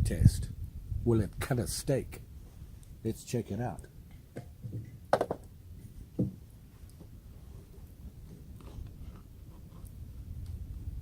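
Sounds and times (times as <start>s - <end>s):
faint background noise: 0.0s - 11.0s
sharp knocks: 4.4s - 5.4s.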